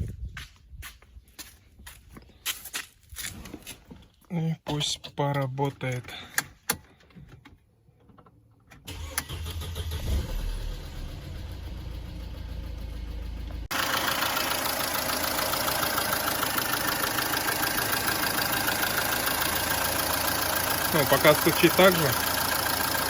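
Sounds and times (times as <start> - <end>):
car engine starting and idling: 4.7 - 23.0
fast even valvetrain ticking: 13.8 - 23.0.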